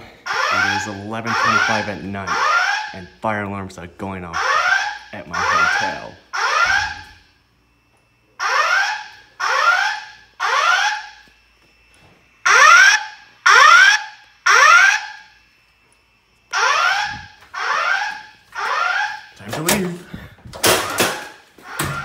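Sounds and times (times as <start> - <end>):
fire alarm whooping: 0.0 - 22.0.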